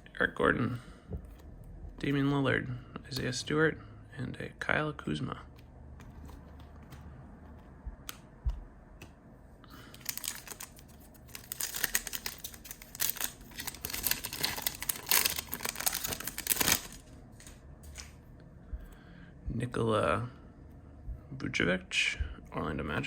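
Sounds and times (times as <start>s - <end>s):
foil wrapper crackling: 9.9s - 17.1s.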